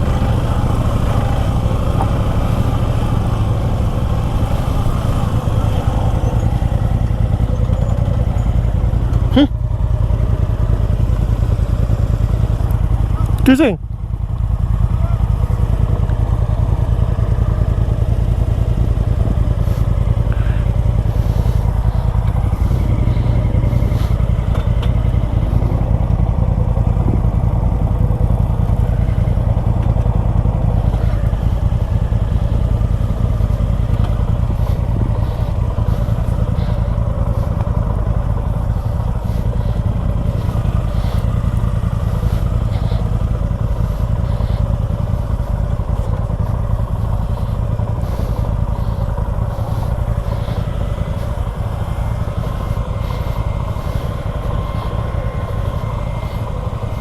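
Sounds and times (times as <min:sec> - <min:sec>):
heavy low rumble: 0:00.0 - 0:57.0
motorcycle engine running: 0:00.0 - 0:57.0.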